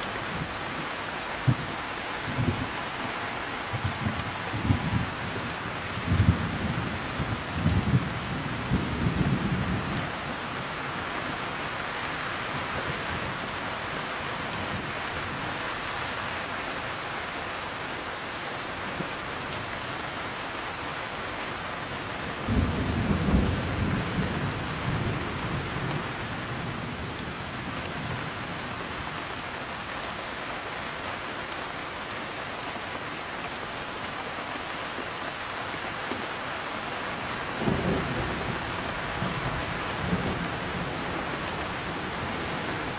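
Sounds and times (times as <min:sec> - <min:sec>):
heavy rain: 0:00.0 - 0:42.9
thunder rumbling: 0:03.6 - 0:10.2.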